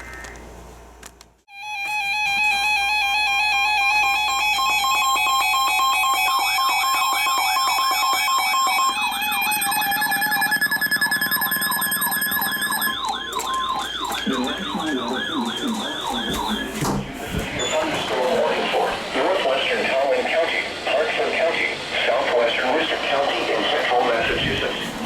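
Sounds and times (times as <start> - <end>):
buzzy two-pitch alarm tone: 1.5 - 16.9
siren sweeping up and down: 1.6 - 16.8
steady electronic tone: 1.7 - 16.8.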